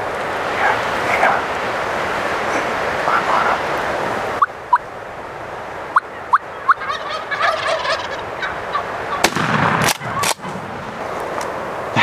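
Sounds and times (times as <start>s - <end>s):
turkeys calling: 2.4s - 4.9s, 5.9s - 10.5s
turkey gobble: 6.0s - 9.3s
sharp crack: 9.2s - 12.0s.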